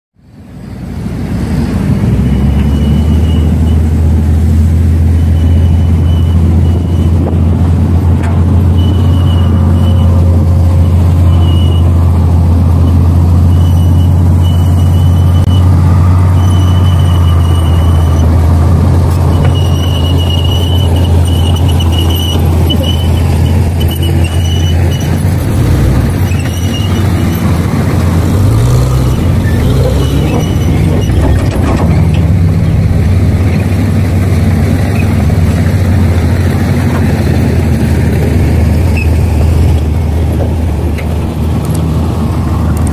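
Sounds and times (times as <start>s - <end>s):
heavy diesel engine running: 0.2s - 42.9s
high-pitched squeals: 8.6s - 27.8s, 28.4s - 34.0s.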